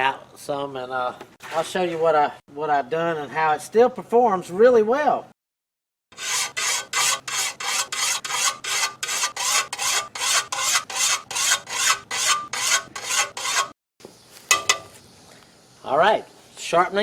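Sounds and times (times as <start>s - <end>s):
file rasping on steel blade: 6.1s - 13.8s.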